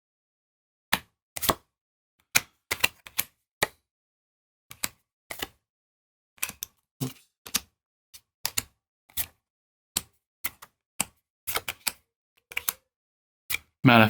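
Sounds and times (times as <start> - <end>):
cards snapping and tapping: 1.0 - 1.7, 2.4 - 3.8, 4.7 - 5.6, 6.4 - 6.8, 8.4 - 9.4, 10.0 - 12.8.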